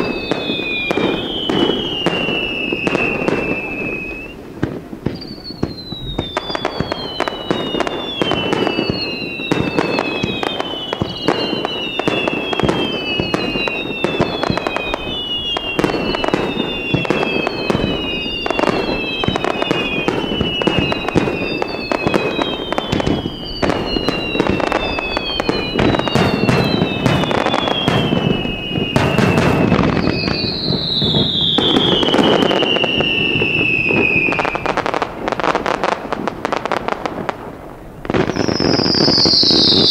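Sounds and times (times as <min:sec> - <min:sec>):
fireworks bangs and crackles: 0:00.0 - 0:39.9
whistling fireworks: 0:00.0 - 0:39.9.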